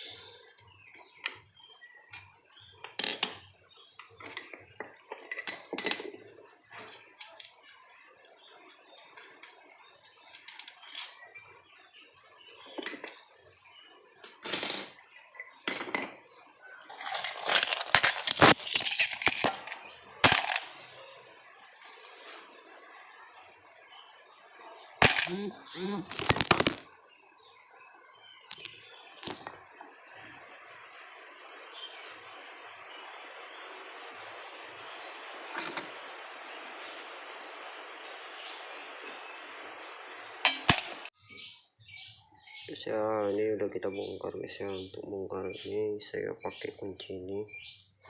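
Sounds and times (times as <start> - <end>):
metal tools clinking and clattering: 16.8 - 20.7, 40.5 - 41.1.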